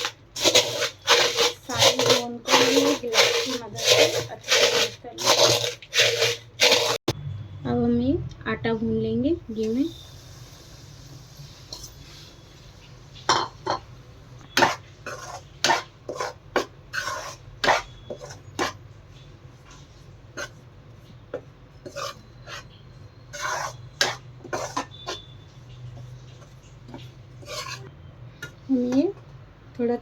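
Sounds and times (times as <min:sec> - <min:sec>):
metal utensil scraping a pan: 0:00.0 - 0:07.1, 0:14.5 - 0:18.8, 0:19.7 - 0:20.6, 0:21.3 - 0:27.9.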